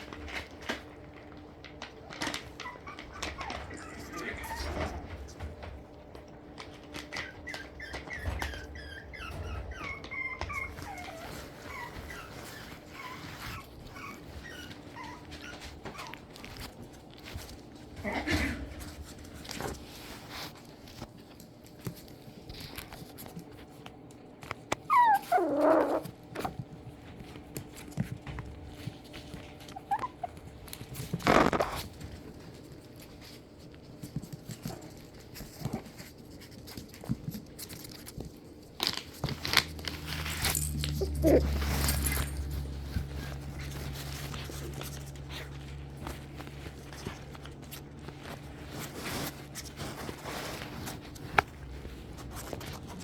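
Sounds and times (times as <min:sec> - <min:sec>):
puppies whimpering: 0:02.3 - 0:05.1, 0:06.9 - 0:16.6, 0:24.8 - 0:26.5, 0:29.4 - 0:30.7, 0:40.6 - 0:45.2
low steady hum: 0:10.2 - 0:53.0.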